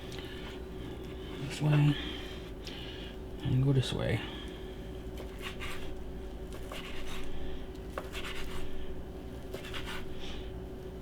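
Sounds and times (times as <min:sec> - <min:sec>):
knife scraping cutting surface: 0:05.3 - 0:05.9, 0:06.6 - 0:07.3, 0:08.0 - 0:08.6, 0:09.5 - 0:10.1.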